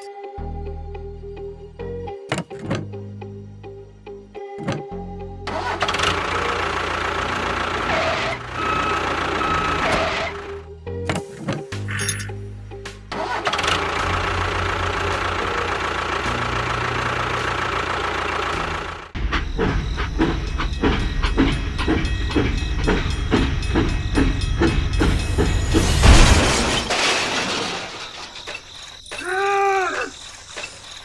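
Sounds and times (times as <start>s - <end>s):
rhythmic chugging: 5.5s - 10.6s, 11.7s - 26.9s
engine running: 5.5s - 10.8s, 11.8s - 29.1s.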